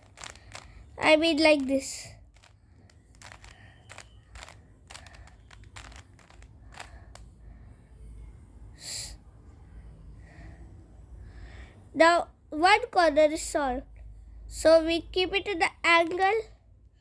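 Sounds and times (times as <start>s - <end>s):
plastic cube layers clicking: 0.0s - 7.3s.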